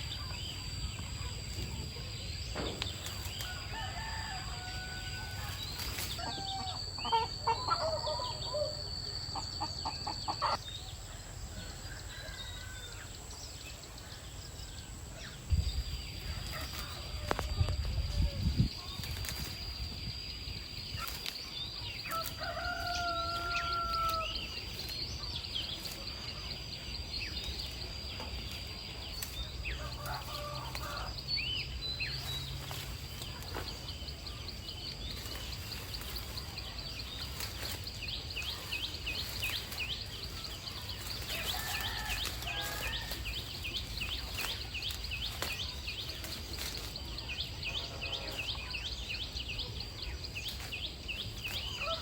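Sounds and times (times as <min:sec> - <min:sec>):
chickens clucking and calling: 0:00.0 - 0:14.3
rooster crowing: 0:03.4 - 0:08.8, 0:22.1 - 0:24.4, 0:29.8 - 0:31.2, 0:41.3 - 0:43.3.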